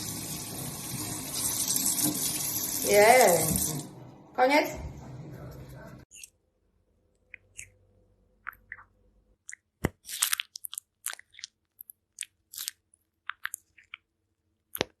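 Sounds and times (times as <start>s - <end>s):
crunchy chewing: 9.4s - 14.1s.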